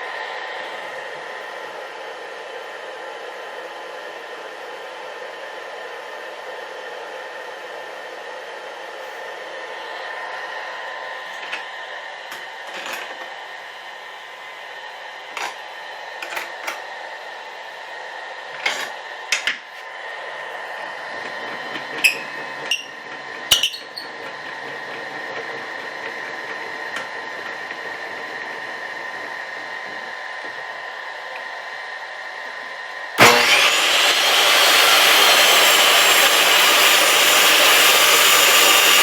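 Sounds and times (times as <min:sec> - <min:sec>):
table saw running: 0:18.5 - 0:31.7, 0:32.4 - 0:39.0.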